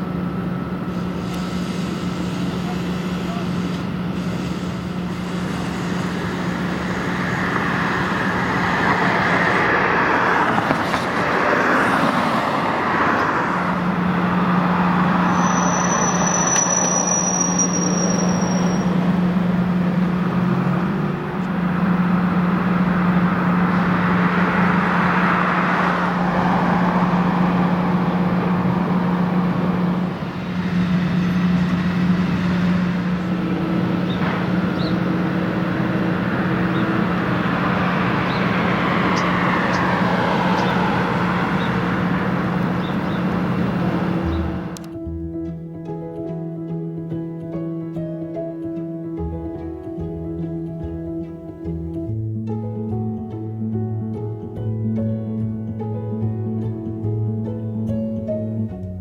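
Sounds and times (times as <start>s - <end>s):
traffic passing: 0.0s - 59.0s
high-pitched squeal: 0.8s - 19.3s.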